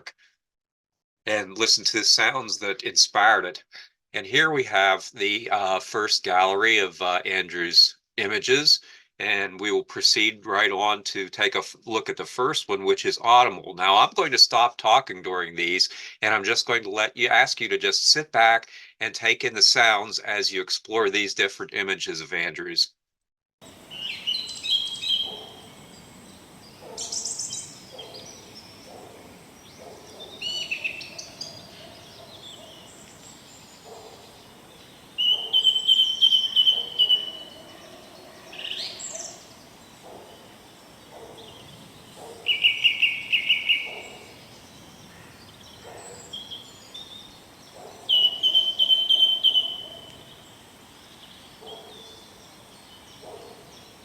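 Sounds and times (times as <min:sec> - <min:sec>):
birds chirping: 0:23.6 - 0:54.0
bird rapid trill: 0:23.9 - 0:50.5.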